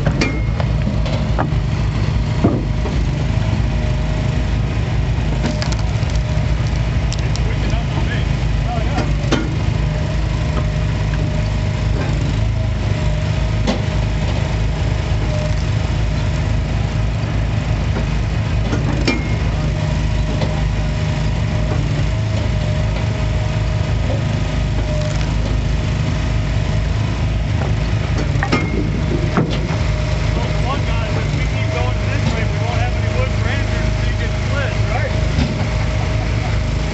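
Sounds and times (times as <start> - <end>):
small gas engine running: 0.0 - 36.9
wood cracking as it splits: 5.4 - 7.5, 25.0 - 25.4.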